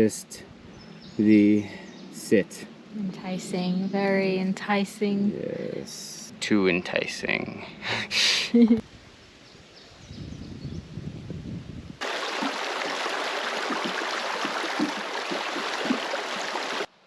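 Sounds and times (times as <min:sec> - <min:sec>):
mountain stream rushing: 0:12.0 - 0:16.9.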